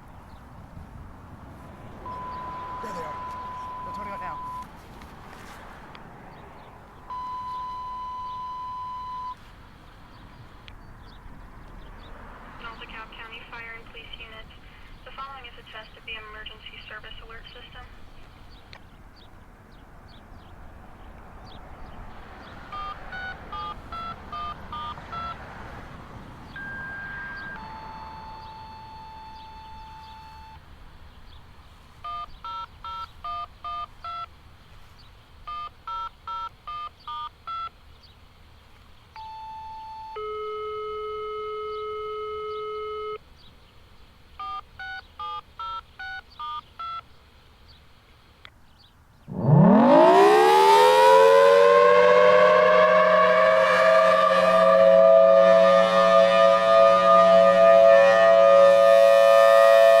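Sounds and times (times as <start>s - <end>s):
steady radio tone: 2.0s - 4.7s, 12.6s - 18.3s
touch-tone beeps: 2.0s - 4.7s, 7.1s - 9.4s, 22.7s - 25.4s, 26.6s - 30.6s, 32.0s - 34.3s, 35.5s - 37.7s, 39.2s - 43.2s
warning siren winding up: 2.0s - 4.7s, 26.6s - 30.6s, 49.3s - 60.0s.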